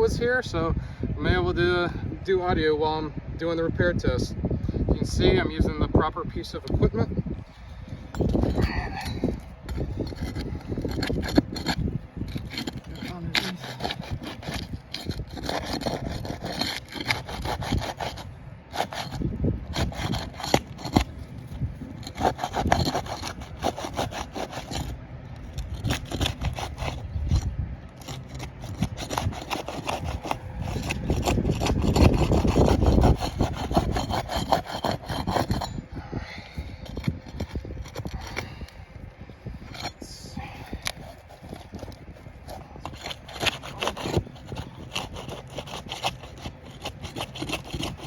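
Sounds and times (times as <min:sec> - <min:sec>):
pry tool scraping shingles: 0:06.4 - 0:48.0.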